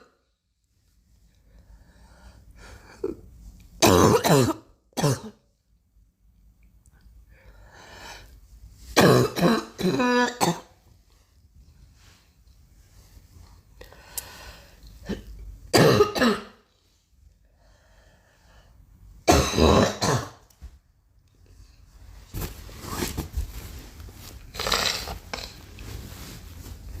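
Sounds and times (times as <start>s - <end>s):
girl coughing: 3.8s - 5.4s, 9.0s - 10.8s, 15.1s - 16.6s, 19.3s - 20.4s.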